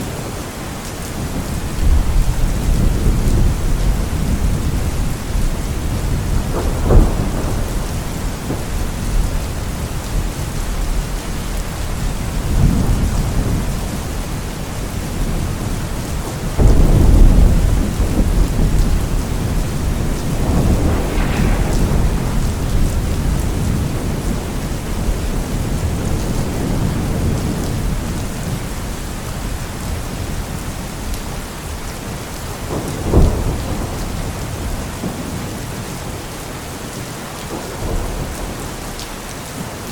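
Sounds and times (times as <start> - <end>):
heavy rain: 0.0 - 39.9
thunder rumbling: 1.2 - 14.2, 14.8 - 31.1, 32.6 - 36.2
thunder clap: 1.4 - 11.0, 16.6 - 28.6, 32.7 - 35.7.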